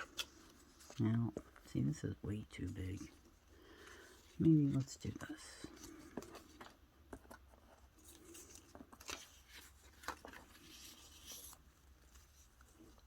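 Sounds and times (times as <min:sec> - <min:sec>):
paper rustling: 0:00.0 - 0:13.0.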